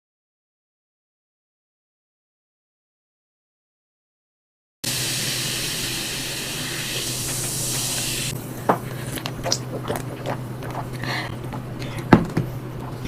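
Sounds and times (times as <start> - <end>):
loud steady hiss: 4.8 - 8.6
mouth clicks of eating: 9.1 - 11.1.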